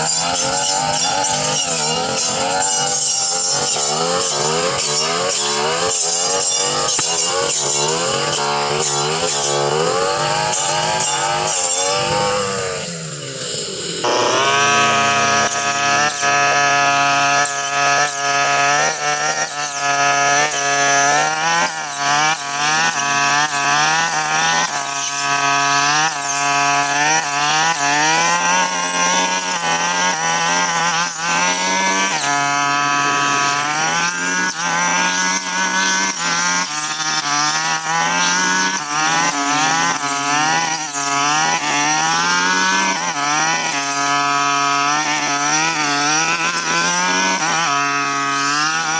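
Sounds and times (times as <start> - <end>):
brush cutter engine cutting brush: 0.0 - 48.9.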